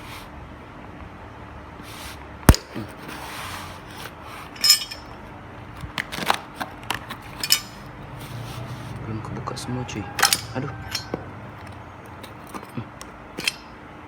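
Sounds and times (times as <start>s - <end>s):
packaging rustling and scraping: 1.8s - 5.2s, 5.8s - 9.0s, 10.2s - 12.8s.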